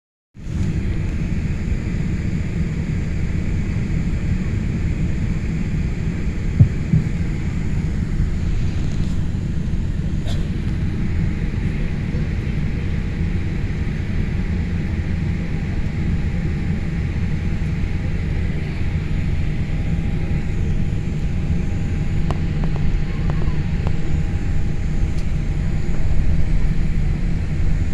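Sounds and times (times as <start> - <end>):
airliner cabin rumble: 0.4 - 27.9.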